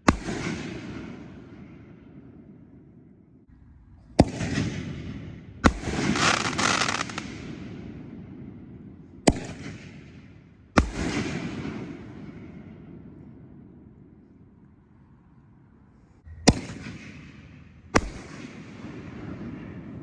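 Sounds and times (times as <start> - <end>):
firework bangs: 4.2 - 10.2
firework crackle and hiss: 5.6 - 7.3.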